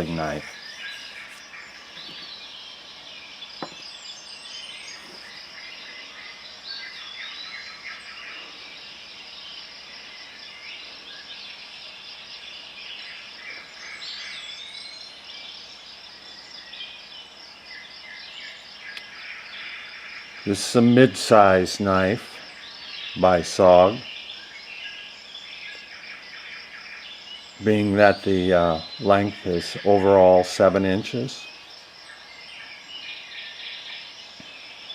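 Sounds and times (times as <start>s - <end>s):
short bird calls: 0.0s - 8.7s
insects chirping: 0.0s - 34.9s.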